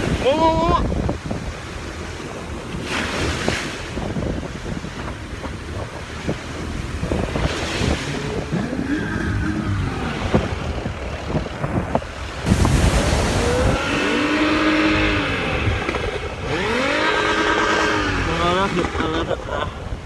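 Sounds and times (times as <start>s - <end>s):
wind buffeting microphone: 0.0s - 20.0s
motor engine revving: 6.1s - 19.7s.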